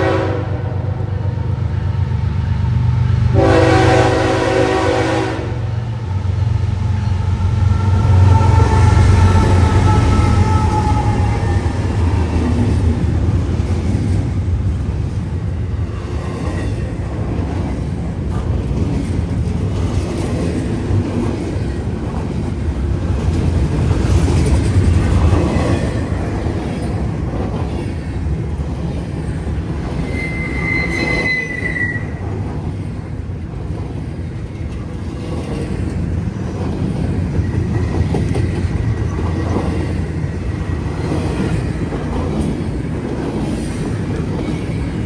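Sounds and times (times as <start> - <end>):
locomotive horn: 0.0 - 1.2, 3.3 - 6.2, 7.0 - 12.0, 30.1 - 32.2
train rumbling on rails: 0.0 - 45.0
high wheel squeal: 7.0 - 11.8, 29.8 - 32.3.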